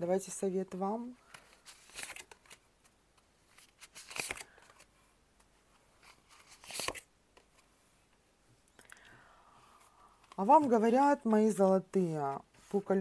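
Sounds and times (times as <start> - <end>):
cards rustling: 1.2 - 7.7.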